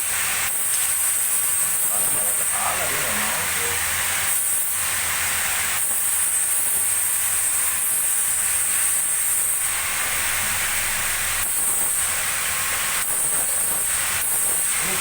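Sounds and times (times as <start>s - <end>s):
steady loud hiss: 1.4s - 6.4s, 9.6s - 15.0s.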